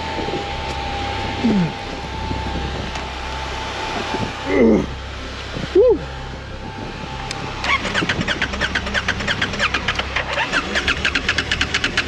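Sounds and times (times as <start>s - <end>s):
low steady hum: 0.0s - 11.1s
motorcycle engine turning over: 7.2s - 12.0s.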